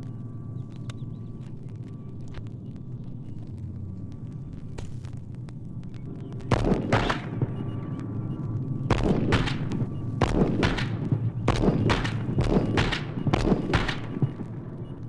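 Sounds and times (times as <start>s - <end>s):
low rumble: 0.0s - 15.0s
gunshots: 6.5s - 7.8s, 8.9s - 14.5s.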